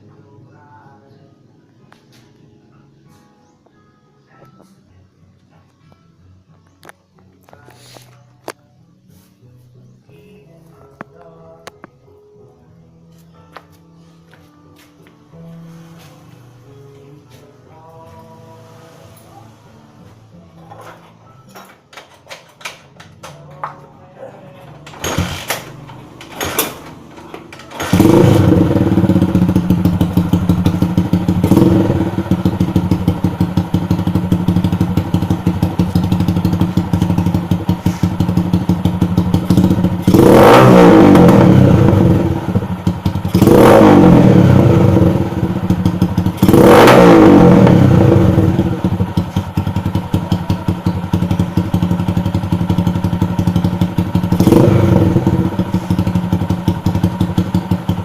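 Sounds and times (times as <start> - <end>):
motorcycle engine idling and revving: 21.9 - 58.0.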